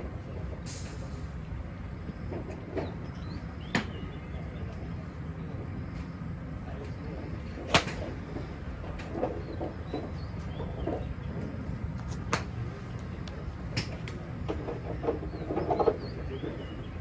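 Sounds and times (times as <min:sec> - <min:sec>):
golf club striking ball: 0:07.7 - 0:08.2.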